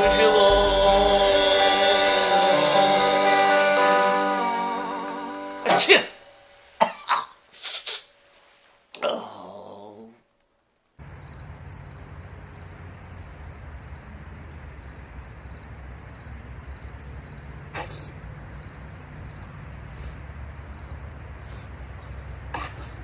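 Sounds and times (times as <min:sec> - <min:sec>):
high steady whine: 0:00.0 - 0:06.7.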